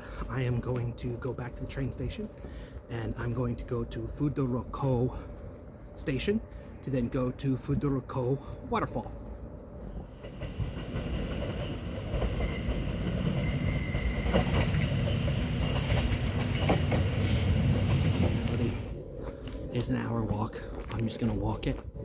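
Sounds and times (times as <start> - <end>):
train rumbling on rails: 0.0 - 22.0
high-pitched wheel squeals: 13.3 - 17.8.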